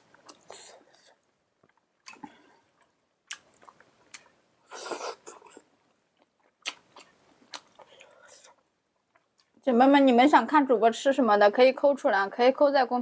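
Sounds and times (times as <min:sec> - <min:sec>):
chewing and biting food: 0:00.1 - 0:08.2.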